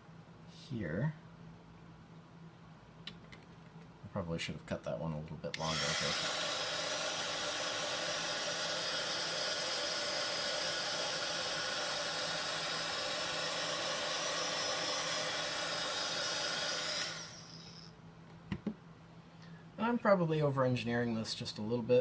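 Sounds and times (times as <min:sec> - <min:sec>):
heat gun fan hiss: 0:05.5 - 0:18.0.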